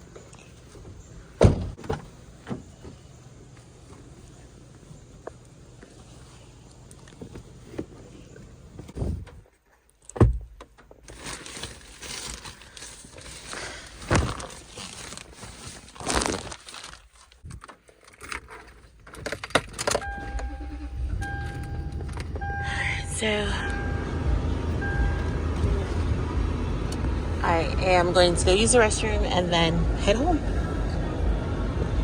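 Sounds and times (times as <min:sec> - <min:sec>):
rustling and crinkling: 0:00.0 - 0:20.1.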